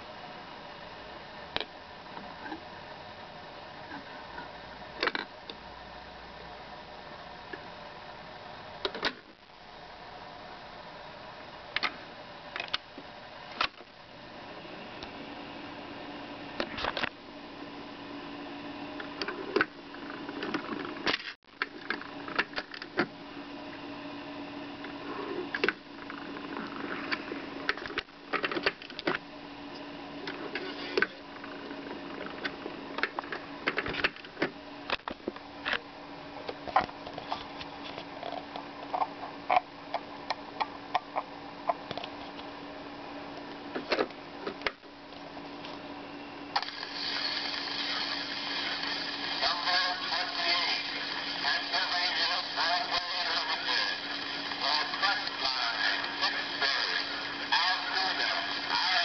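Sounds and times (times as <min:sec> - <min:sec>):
steady hum: 0:00.0 - 0:59.0
record clicks and pops: 0:16.6 - 0:17.2, 0:19.0 - 0:23.2, 0:25.5 - 0:35.8, 0:43.5 - 0:45.3, 0:46.6 - 0:49.0
train sound effects record: 0:46.6 - 0:59.0.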